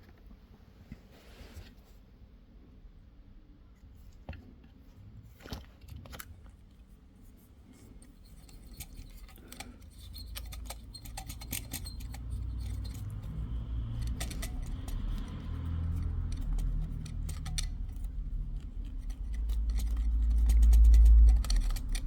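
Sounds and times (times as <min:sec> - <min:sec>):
hand tool clicking and scraping: 0:07.8 - 0:22.0.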